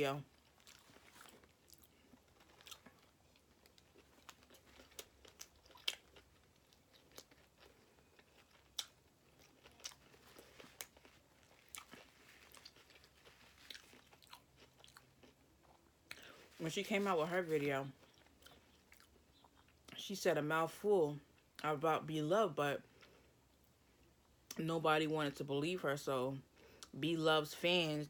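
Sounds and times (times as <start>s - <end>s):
chewing mouth clicks and smacks: 0.4s - 16.3s.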